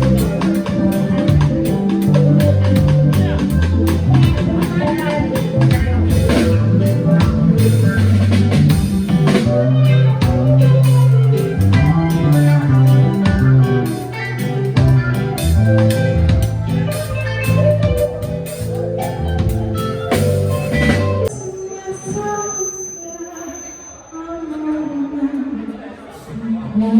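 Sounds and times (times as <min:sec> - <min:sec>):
drum kit: 0:00.0 - 0:21.4
bass line: 0:00.0 - 0:21.6
guitar: 0:00.0 - 0:22.6.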